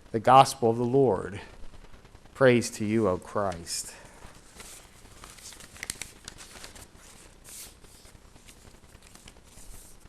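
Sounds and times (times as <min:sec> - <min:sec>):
paper rustling: 0:03.0 - 0:10.0.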